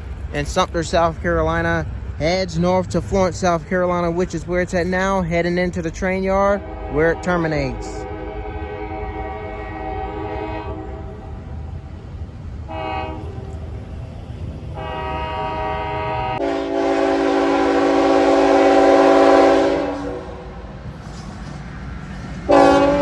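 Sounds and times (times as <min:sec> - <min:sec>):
locomotive engine and rail noise: 0:00.0 - 0:23.0
locomotive air horn blasts: 0:06.6 - 0:11.3, 0:12.7 - 0:13.5, 0:14.8 - 0:20.6, 0:22.5 - 0:23.0.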